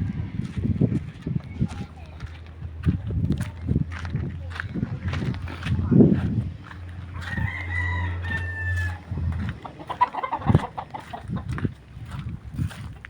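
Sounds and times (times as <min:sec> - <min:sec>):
rooster crowing: 0:07.1 - 0:10.7.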